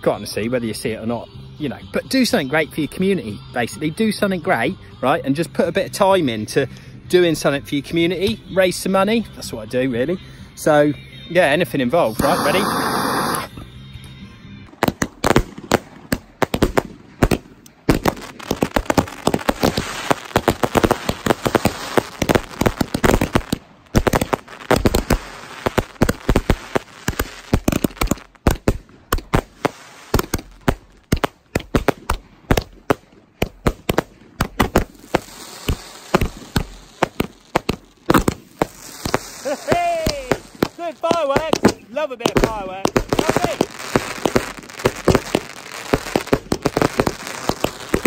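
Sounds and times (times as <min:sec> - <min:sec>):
fireworks bangs and crackling: 0:12.1 - 0:13.6, 0:14.7 - 0:48.0.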